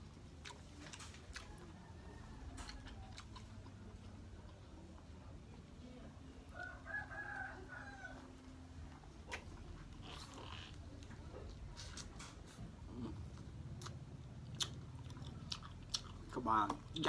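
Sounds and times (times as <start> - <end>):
mouth clicks and smacks eating: 0.1 - 1.7, 13.3 - 17.0
rooster crowing: 1.6 - 3.1, 6.5 - 8.5.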